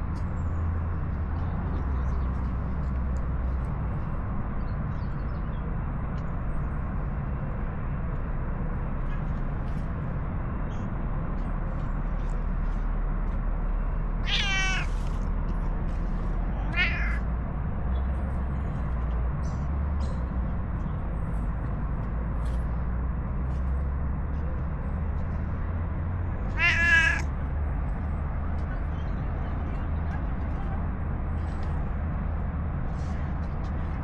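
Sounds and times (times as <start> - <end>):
low background rumble: 0.0 - 34.0
cat meowing: 14.2 - 15.1, 16.6 - 17.3, 26.5 - 27.3.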